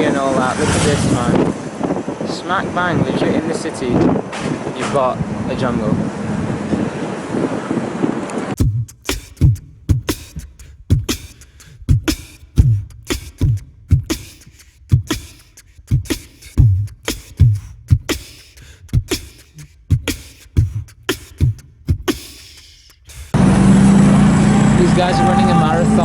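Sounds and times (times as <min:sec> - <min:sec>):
kick drum thumps: 0:08.6 - 0:22.4
snare hits: 0:09.0 - 0:18.5, 0:19.1 - 0:22.8.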